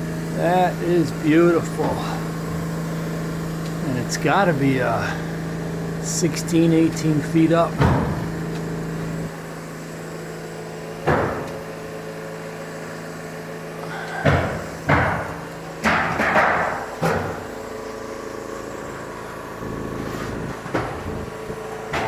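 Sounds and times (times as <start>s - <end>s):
steady low hum: 0.0s - 22.0s
knocks and bangs: 7.7s - 8.4s, 11.0s - 11.6s, 14.1s - 17.6s, 20.2s - 22.0s.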